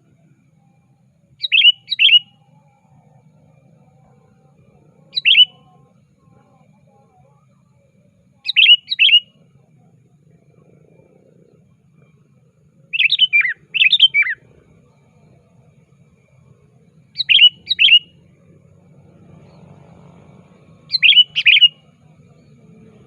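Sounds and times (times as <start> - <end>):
bulbul whistled calls: 1.4 - 6.3, 8.3 - 9.7, 11.4 - 23.0.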